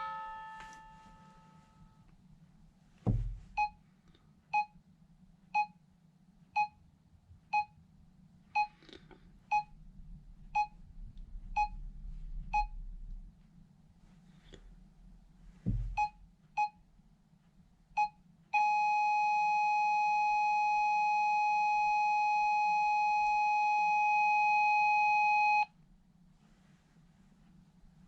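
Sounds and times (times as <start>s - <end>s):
low thump: 3.0s - 3.7s, 15.6s - 16.2s.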